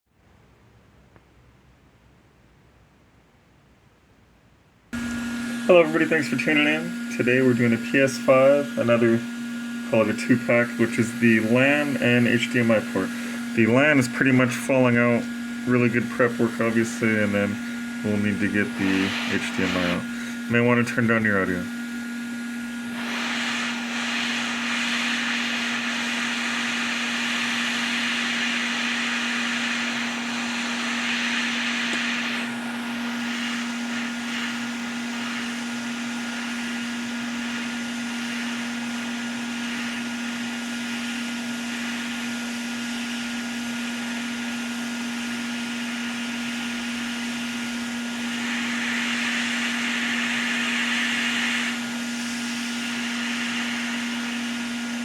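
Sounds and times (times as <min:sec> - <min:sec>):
blower hum: 0:04.9 - 0:55.0
rushing air hiss: 0:16.0 - 0:20.5, 0:22.9 - 0:40.2, 0:48.2 - 0:54.4.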